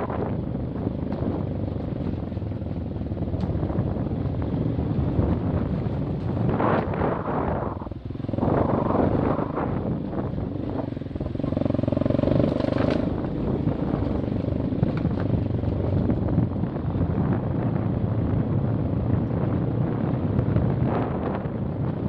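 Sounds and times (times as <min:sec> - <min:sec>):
dirt bike engine revving: 0:06.5 - 0:14.0.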